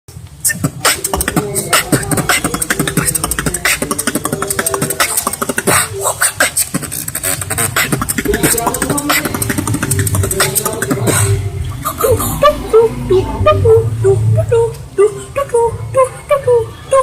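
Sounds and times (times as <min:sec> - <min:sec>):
person beatboxing: 0:00.4 - 0:17.0.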